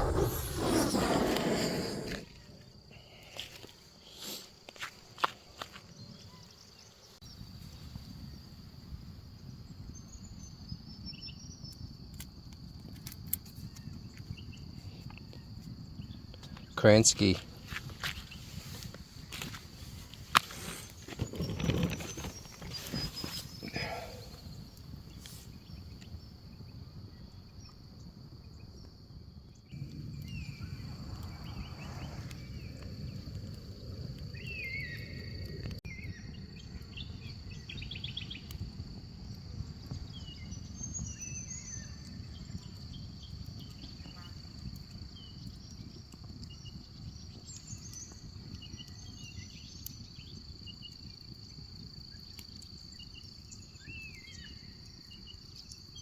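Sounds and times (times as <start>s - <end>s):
insects trilling: 11.4s - 56.0s.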